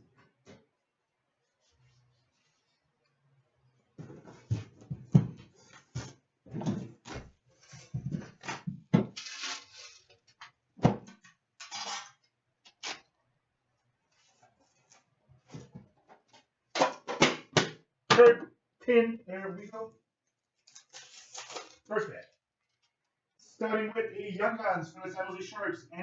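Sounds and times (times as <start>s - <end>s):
packaging rustling: 20.6s - 22.9s.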